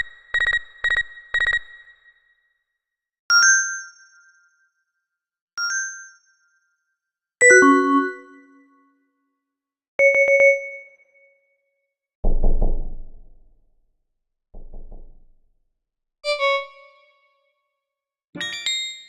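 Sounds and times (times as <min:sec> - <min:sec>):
quick beeps: 0:00.0 - 0:01.9, 0:10.0 - 0:10.9
bell-like notes: 0:18.4 - 0:19.0.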